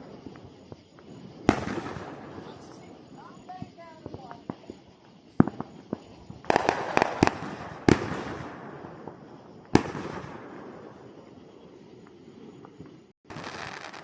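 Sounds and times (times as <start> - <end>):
firework bang: 0.0 - 4.6, 5.3 - 11.1
firework booms with rolling echo: 0.0 - 14.0
firework cracks: 0.0 - 14.0.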